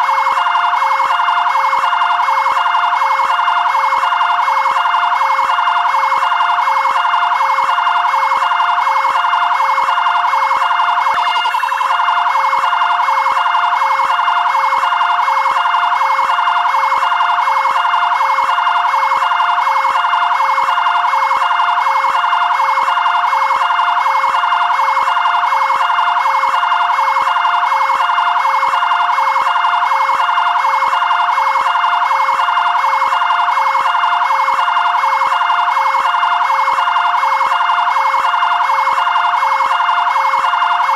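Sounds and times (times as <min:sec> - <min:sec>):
two-tone electronic siren: 0:00.0 - 0:40.9.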